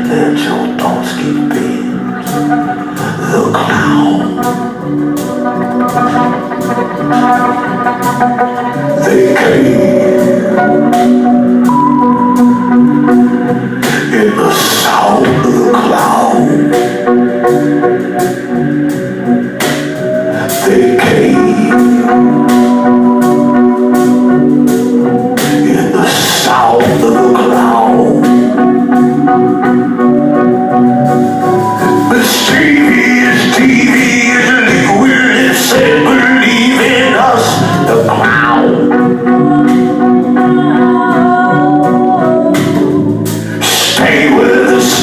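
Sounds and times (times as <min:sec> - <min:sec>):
rock music guitar chords: 0:00.0 - 0:45.0
wavering lead guitar line: 0:00.0 - 0:45.0.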